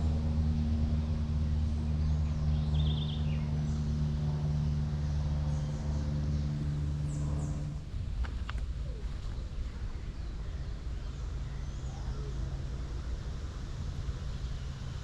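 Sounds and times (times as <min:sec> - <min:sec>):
low engine hum: 0:00.0 - 0:15.0
birds chirping: 0:00.9 - 0:12.6.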